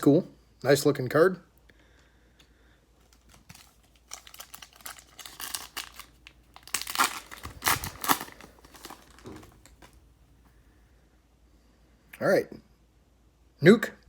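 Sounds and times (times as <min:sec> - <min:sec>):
wrapper tearing and crinkling: 0:03.0 - 0:10.0.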